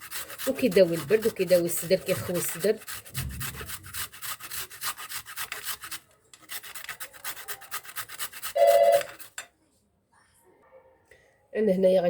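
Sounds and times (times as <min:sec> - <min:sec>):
turnip rasping on a grater: 0:00.0 - 0:09.4.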